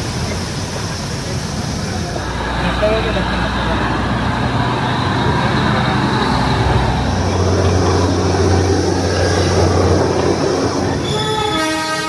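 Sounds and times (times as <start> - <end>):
low engine drone: 0.0 - 11.5
train rumbling: 0.0 - 12.0.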